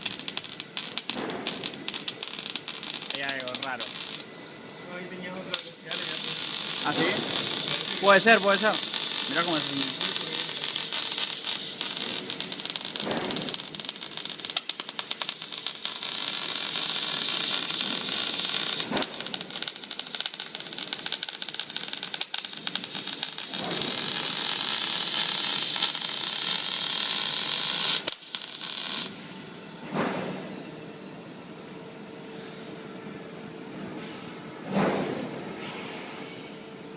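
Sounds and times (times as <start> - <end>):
welding arc crackling and hissing: 0.0 - 4.3, 5.2 - 29.2.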